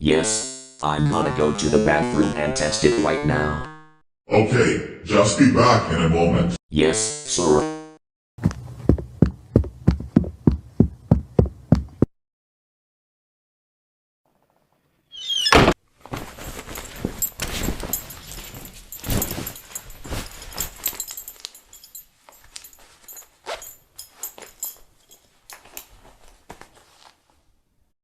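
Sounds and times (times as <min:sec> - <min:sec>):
door squeak and thud: 0:15.1 - 0:15.8.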